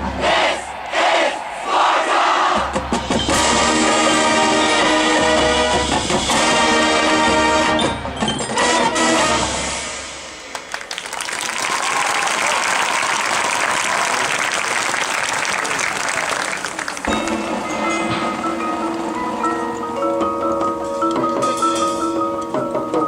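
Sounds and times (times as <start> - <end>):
marching band brass chords: 0.0 - 10.6, 16.7 - 23.0
crowd applauding and cheering: 10.4 - 20.6.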